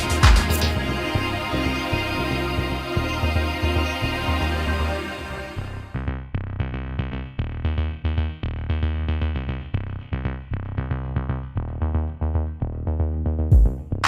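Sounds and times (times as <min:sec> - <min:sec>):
electronic background music: 0:00.0 - 0:06.1.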